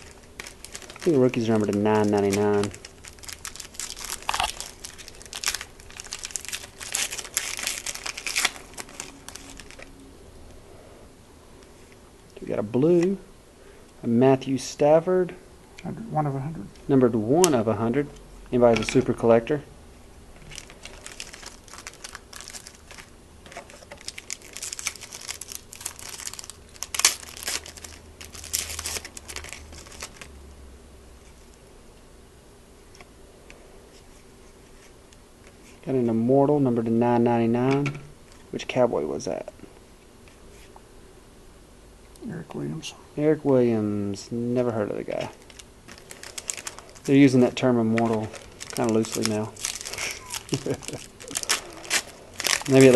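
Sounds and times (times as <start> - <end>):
wrapper crinkling: 0.0 - 10.0, 20.4 - 30.4, 45.1 - 52.9.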